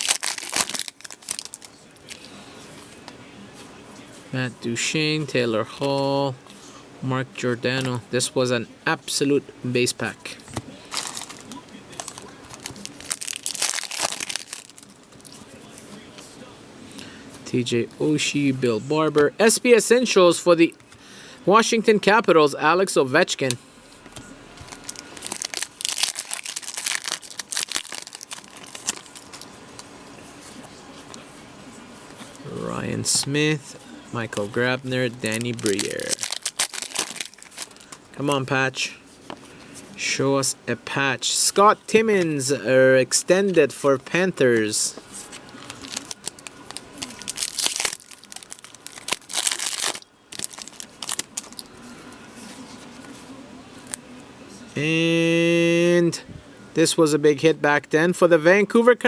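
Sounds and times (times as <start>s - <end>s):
foil wrapper tearing and crinkling: 0.0s - 1.8s, 10.9s - 14.9s, 24.7s - 29.4s, 35.1s - 37.9s, 45.6s - 51.7s
cards clicking and crackling: 0.0s - 2.3s, 24.6s - 29.9s, 34.3s - 38.0s, 45.3s - 51.7s.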